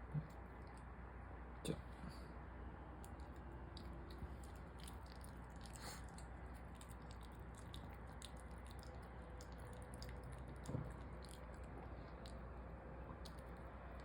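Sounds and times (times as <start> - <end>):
dog licking and chewing: 3.0 - 14.0.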